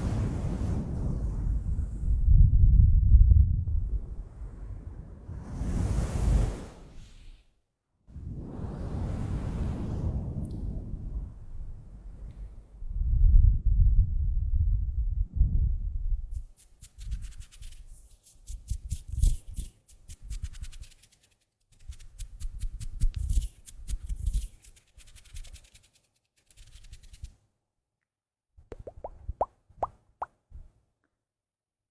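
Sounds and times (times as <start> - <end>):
earmuffs rubbing on microphone: 16.2 - 27.4.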